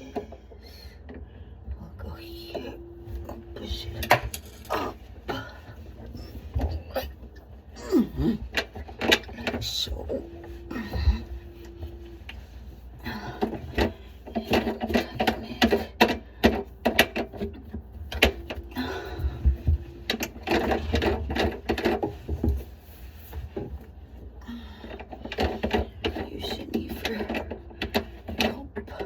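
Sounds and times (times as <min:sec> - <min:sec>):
steady low tone: 0:00.0 - 0:16.4
plastic pipes clicking and scraping: 0:00.0 - 0:29.0.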